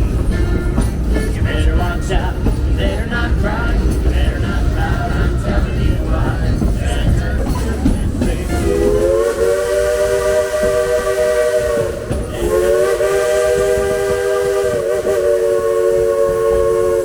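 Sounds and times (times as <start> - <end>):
steam locomotive whistle: 0.0 - 1.4, 8.4 - 17.0.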